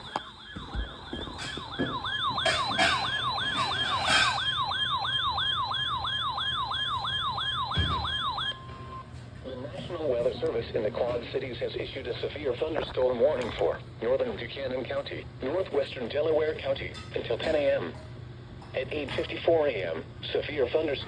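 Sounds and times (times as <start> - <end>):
electronic siren yelping: 0.0 - 9.0.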